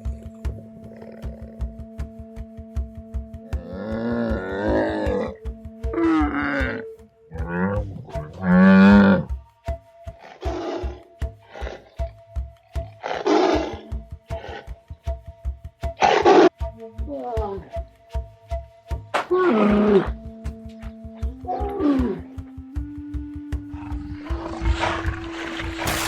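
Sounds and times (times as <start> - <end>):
background music with steady beat: 0.0 - 26.0
large animal calling: 0.5 - 1.9, 3.5 - 9.4, 10.2 - 14.8, 16.0 - 16.5, 19.2 - 20.2, 21.1 - 26.0.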